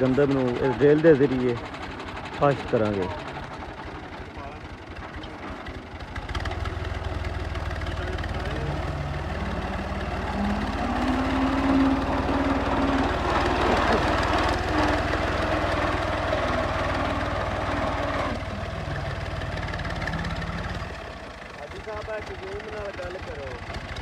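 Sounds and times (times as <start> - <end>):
tractor engine revving: 0.0 - 24.0.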